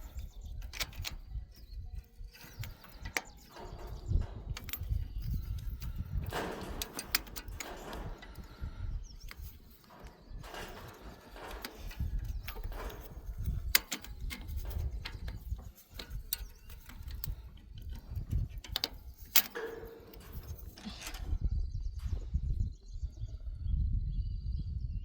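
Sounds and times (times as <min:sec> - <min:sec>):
hand tools knocking on metal: 0:02.3 - 0:20.8.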